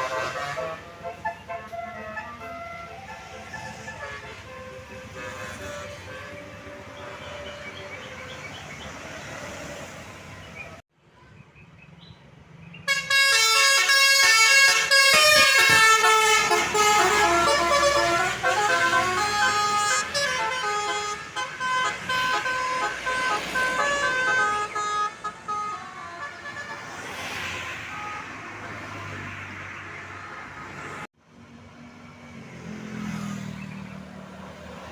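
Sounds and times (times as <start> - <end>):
musical air horn melody: 0.0 - 8.3, 12.9 - 29.0
engine noise: 0.0 - 10.8, 13.5 - 34.9
traffic noise: 0.0 - 34.9.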